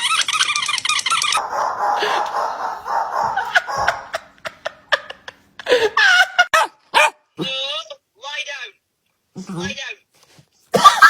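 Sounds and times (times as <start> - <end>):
dog barking: 1.4 - 4.3, 6.6 - 7.2.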